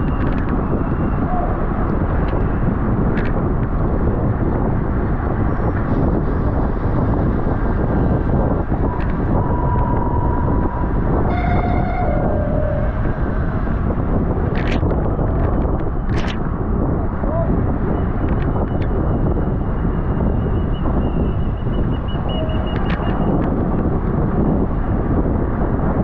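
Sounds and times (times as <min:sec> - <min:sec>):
wind rushing over microphone: 0:00.0 - 0:26.0
short steady tone: 0:08.8 - 0:14.1.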